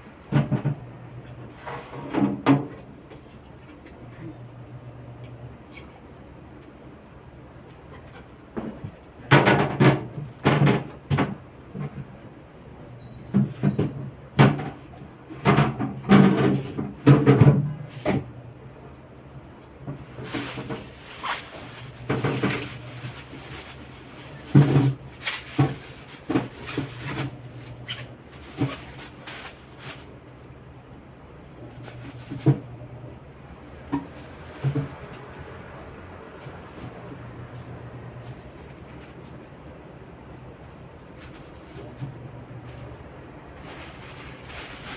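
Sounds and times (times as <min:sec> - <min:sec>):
containers knocking and clattering: 0:21.7 - 0:27.8.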